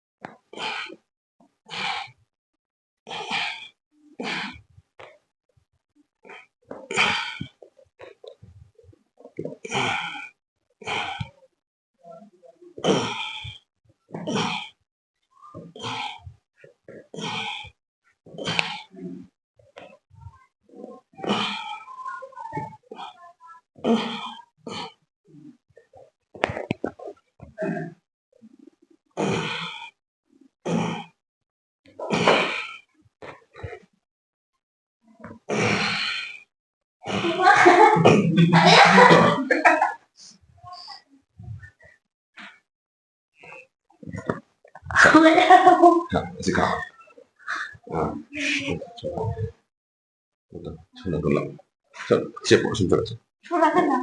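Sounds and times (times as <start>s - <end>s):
person grunting and exhaling: 3.1s - 4.6s, 6.9s - 7.6s, 9.7s - 11.4s, 12.8s - 13.6s, 14.2s - 14.8s, 15.7s - 16.3s, 21.2s - 21.9s, 23.8s - 25.0s, 27.6s - 28.0s, 29.2s - 29.9s, 32.0s - 32.8s, 35.5s - 36.4s.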